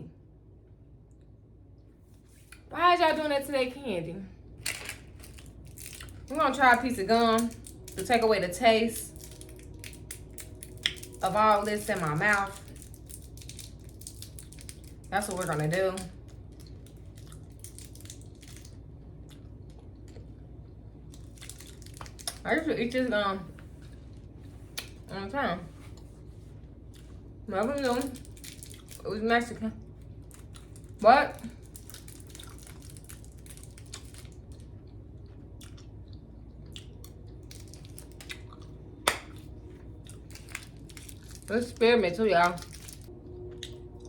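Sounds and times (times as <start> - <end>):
person chewing gum: 9.1 - 11.2, 16.2 - 22.5, 31.6 - 41.5, 42.6 - 44.0.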